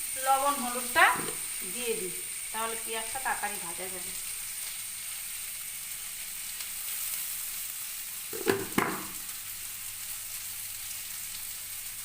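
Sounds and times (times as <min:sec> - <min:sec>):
onion sizzling in hot oil: 0:00.0 - 0:12.0
pan knocks from stirring: 0:08.3 - 0:09.2.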